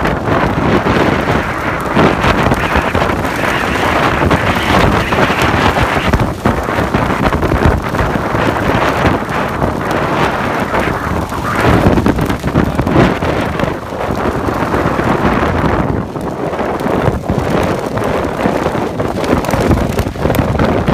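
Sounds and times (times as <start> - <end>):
wind buffeting microphone: 0.0 - 20.9.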